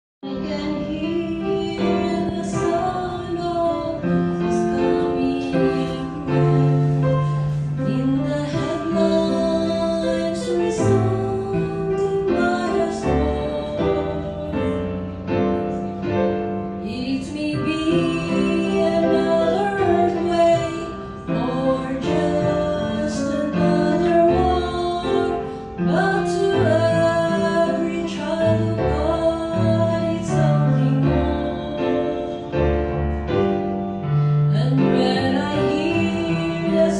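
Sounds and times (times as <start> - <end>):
woman singing gospel: 0.2 - 7.2, 7.8 - 14.7, 16.8 - 32.5
keyboard accompaniment: 0.2 - 36.9.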